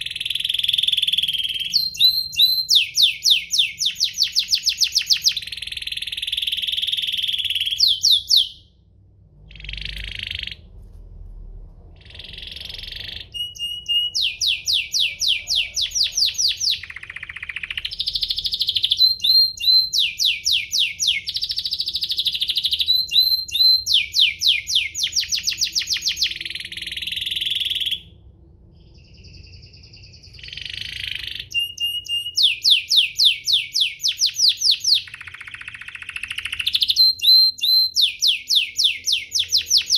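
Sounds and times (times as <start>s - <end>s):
canary singing trills: 0.0s - 8.8s, 9.5s - 10.7s, 12.0s - 28.2s, 28.8s - 39.9s.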